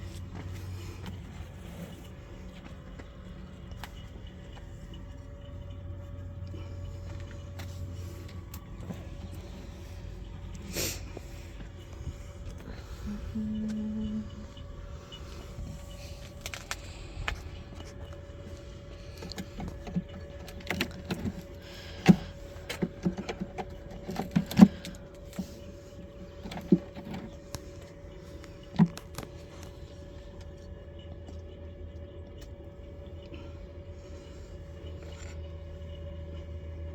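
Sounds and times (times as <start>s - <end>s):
faint steady hum: 0.0s - 36.9s
hive parts knocking and scraping: 15.2s - 30.0s.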